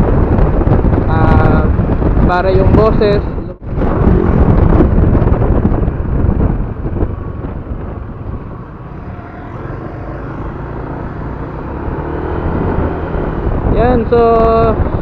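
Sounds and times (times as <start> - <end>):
wind noise: 0.0 - 15.0
motorcycle engine rumble: 3.6 - 15.0.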